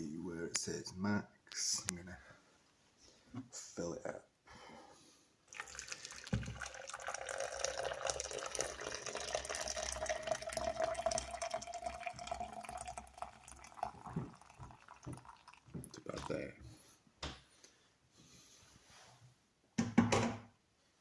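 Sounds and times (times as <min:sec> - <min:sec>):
water pouring into a jug: 0:05.5 - 0:16.6.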